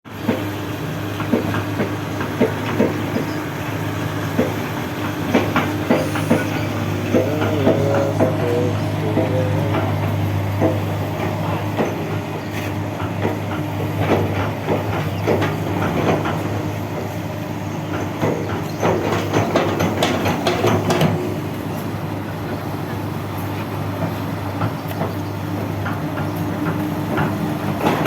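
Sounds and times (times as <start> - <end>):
excavator diesel engine running: 0.1 - 28.0
metallic clanks and knocks: 4.3 - 17.2, 17.9 - 21.4.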